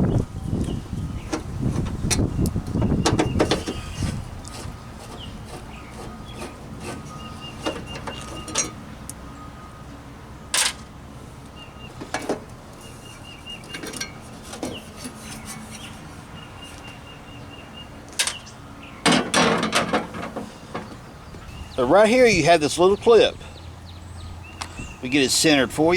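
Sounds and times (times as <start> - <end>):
metal tools clicking and clinking: 7.6 - 8.8, 13.7 - 15.8.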